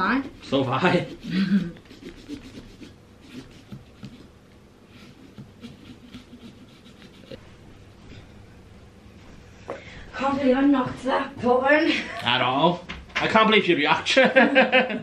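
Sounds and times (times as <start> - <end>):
saw rasping through pumpkin rind: 0.0 - 4.4, 5.0 - 7.4.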